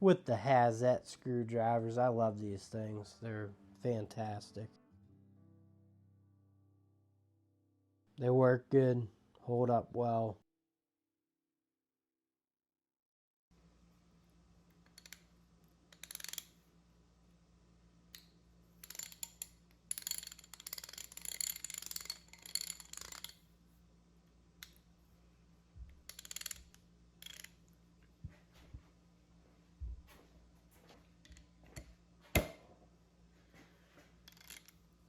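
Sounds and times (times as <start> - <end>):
ratchet clicking: 14.7 - 15.3, 15.9 - 16.6, 18.1 - 23.5, 25.9 - 27.7, 34.3 - 34.8.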